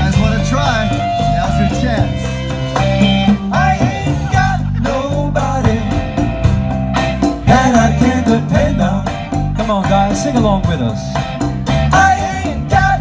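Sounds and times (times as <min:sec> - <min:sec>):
live band playing latin rock: 0:00.0 - 0:13.0.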